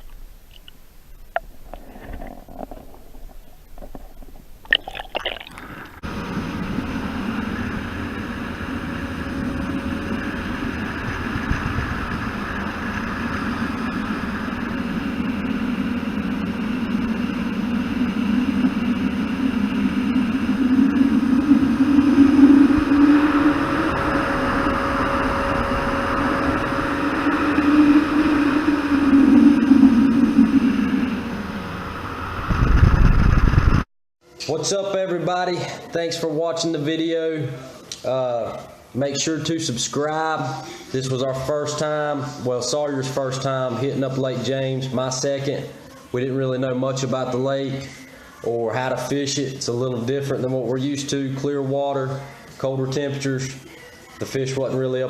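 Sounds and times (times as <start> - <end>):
water noise: 0.0 - 33.8
wind: 0.0 - 34.5
outboard motor drone: 1.2 - 33.8.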